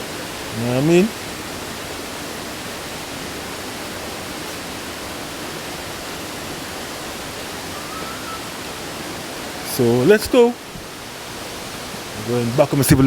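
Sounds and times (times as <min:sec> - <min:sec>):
waterfall roaring: 0:00.0 - 0:13.0.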